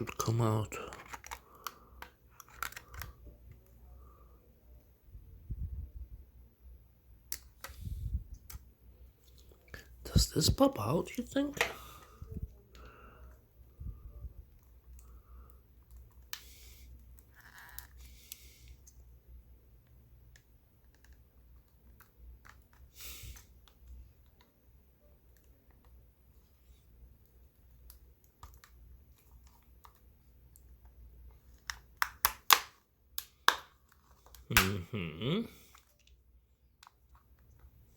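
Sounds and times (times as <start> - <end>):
plastic parts clicking and scraping: 0.1 - 3.7.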